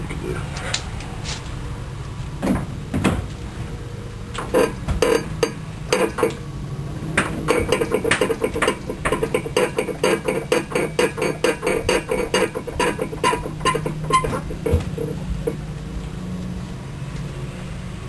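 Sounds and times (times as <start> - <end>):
steady low hum: 0.0 - 18.0
metallic suspension knocking: 4.4 - 6.4, 7.1 - 15.6.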